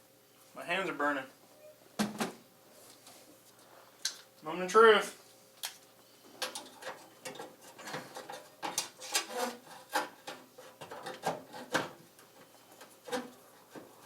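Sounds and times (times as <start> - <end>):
panel scraping and rubbing: 6.7 - 12.0, 12.9 - 14.0.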